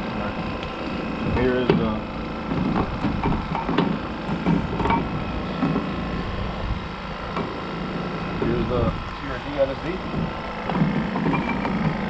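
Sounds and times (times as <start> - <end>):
steady low rumble: 0.0 - 12.0
heavy metal parts clunking: 10.1 - 12.0.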